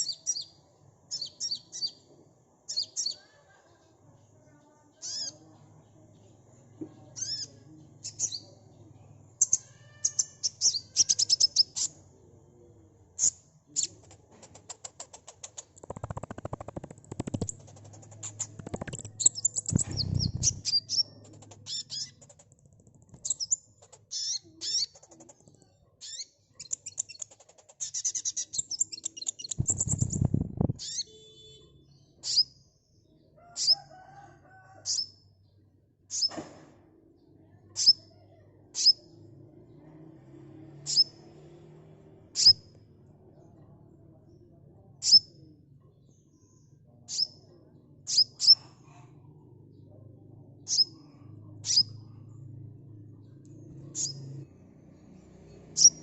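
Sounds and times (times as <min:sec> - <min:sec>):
faint low hum: 0:03.4 - 0:31.3, 0:36.8 - 0:56.0
bird chirps and trills: 0:05.0 - 0:05.5, 0:07.2 - 0:08.6, 0:09.4 - 0:12.0, 0:13.2 - 0:32.6, 0:38.8 - 0:39.2, 0:46.5 - 0:48.7, 0:50.6 - 0:52.2, 0:53.7 - 0:54.4, 0:55.5 - 0:56.0.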